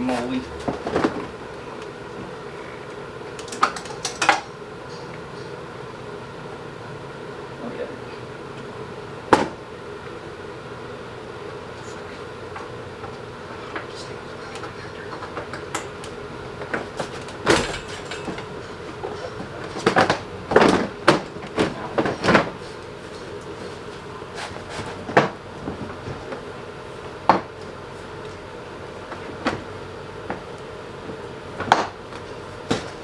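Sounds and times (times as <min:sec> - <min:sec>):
plastic bumper cover clattering: 0:17.0 - 0:18.6.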